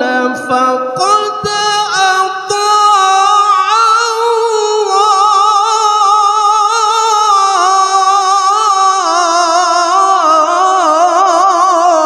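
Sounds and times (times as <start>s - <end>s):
man reciting in a high voice: 0.0s - 12.0s.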